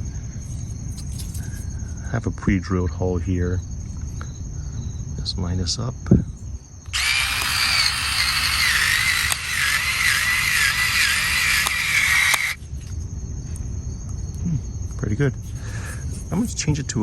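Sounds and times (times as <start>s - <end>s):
electric screwdriver motor whining: 7.0s - 12.6s
ticks: 7.0s - 12.6s.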